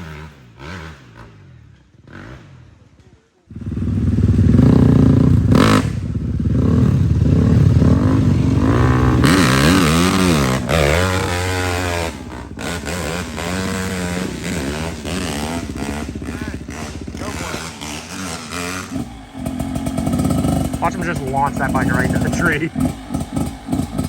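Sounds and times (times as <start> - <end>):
dirt bike engine revving: 0.0 - 24.0.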